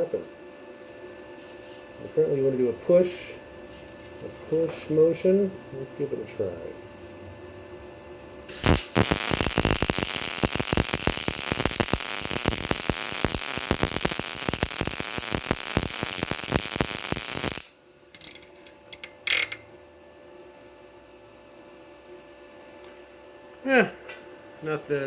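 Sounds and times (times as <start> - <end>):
welding arc crackling: 8.5 - 18.7.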